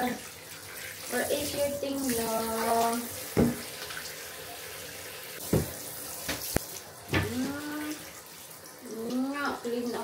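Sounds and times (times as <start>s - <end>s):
bath water splashing: 0.0s - 10.0s
sharp splashes or knocks: 3.3s - 3.7s.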